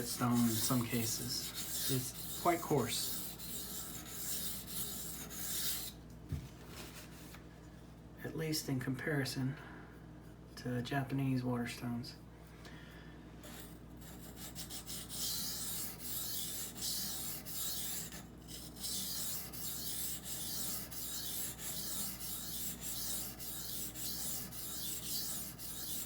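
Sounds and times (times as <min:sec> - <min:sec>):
knife scraping on whetstone: 0:00.0 - 0:06.0, 0:13.4 - 0:26.0.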